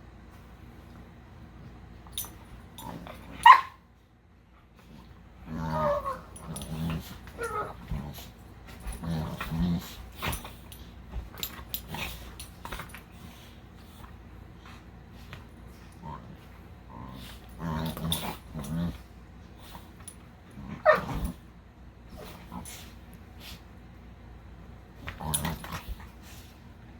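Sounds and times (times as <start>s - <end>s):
dogs play growling: 0.6s - 3.6s, 4.6s - 26.9s
dog yipping: 3.4s - 3.8s.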